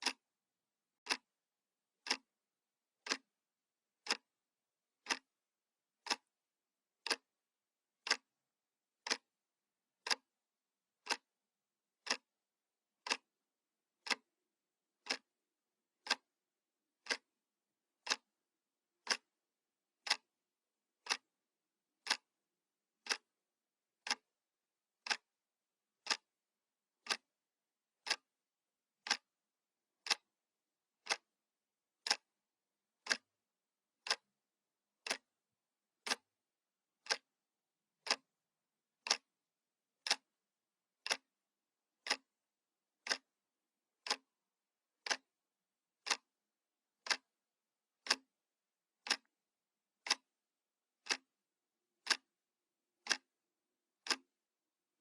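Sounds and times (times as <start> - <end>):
wall clock ticking: 0.0 - 0.2, 1.0 - 1.3, 2.0 - 2.3, 3.0 - 3.3, 4.0 - 4.3, 5.0 - 5.3, 6.0 - 6.3, 7.0 - 7.3, 8.0 - 8.3, 9.0 - 9.3, 10.0 - 10.3, 11.0 - 11.3, 12.0 - 12.3, 13.0 - 13.3, 14.0 - 14.3, 15.0 - 15.3, 16.0 - 16.3, 17.0 - 17.3, 18.0 - 18.3, 19.0 - 19.4, 20.0 - 20.3, 21.0 - 21.3, 22.0 - 22.3, 23.0 - 23.3, 24.0 - 24.3, 25.0 - 25.3, 26.0 - 26.3, 27.0 - 27.3, 28.0 - 28.3, 29.0 - 29.3, 30.0 - 30.3, 31.0 - 31.3, 32.0 - 32.3, 33.0 - 33.3, 34.0 - 34.3, 35.0 - 35.4, 36.0 - 36.3, 37.0 - 37.3, 38.0 - 38.3, 39.0 - 39.3, 40.0 - 40.4, 41.0 - 41.3, 42.0 - 42.4, 43.0 - 43.4, 44.0 - 44.4, 45.0 - 45.4, 46.0 - 46.4, 47.0 - 47.3, 48.0 - 48.3, 49.0 - 49.3, 50.0 - 50.3, 51.0 - 51.3, 52.0 - 52.3, 53.0 - 53.3, 54.0 - 54.4.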